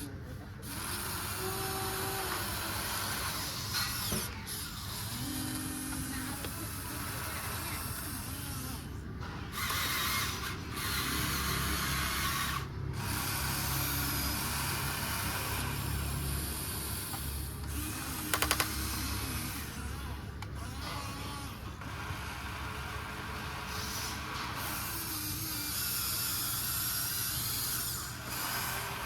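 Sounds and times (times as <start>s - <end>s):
electric motors whirring: 0.0s - 29.0s
quick run of clicks: 17.1s - 19.1s
hiss: 21.9s - 29.0s.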